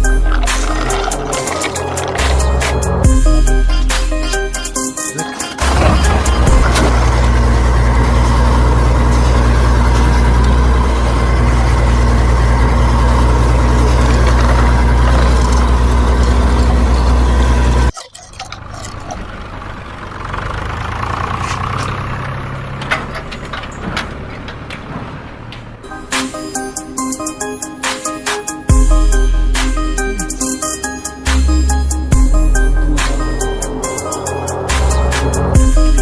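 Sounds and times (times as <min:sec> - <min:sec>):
engine idling with deep throb: 0:00.0 - 0:17.9, 0:28.4 - 0:36.0.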